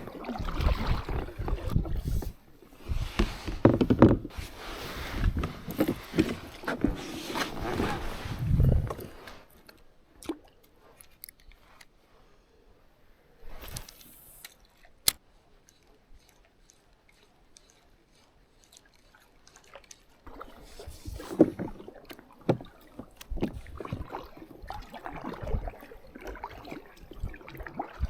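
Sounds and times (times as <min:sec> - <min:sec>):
water sloshing: 0:00.0 - 0:08.3, 0:17.1 - 0:28.0.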